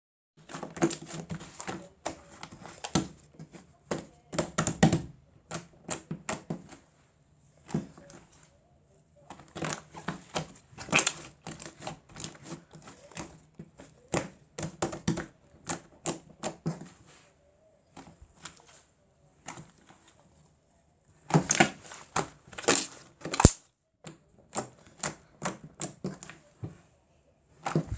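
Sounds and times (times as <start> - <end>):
slime clicking and popping: 22.6 - 23.6.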